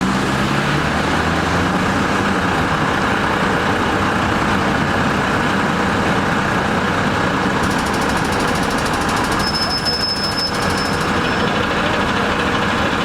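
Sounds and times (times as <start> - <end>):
bus engine idling: 0.0 - 13.0.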